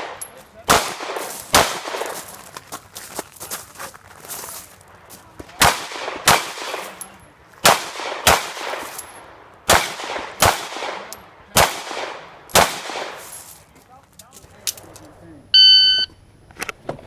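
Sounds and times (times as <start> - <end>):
pistol shots echoing: 0.0 - 2.5, 5.4 - 13.4.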